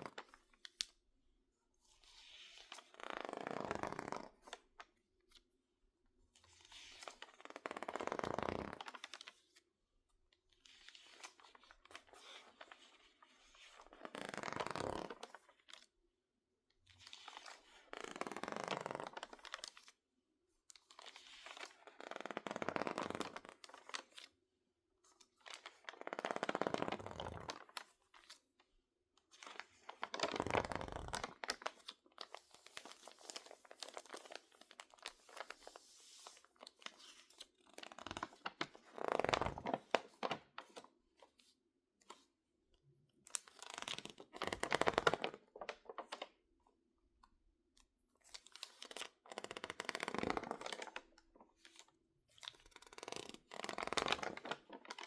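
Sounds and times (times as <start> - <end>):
magazine pages rustling and crinkling: 29.4 - 40.8, 43.3 - 46.3, 52.4 - 55.0.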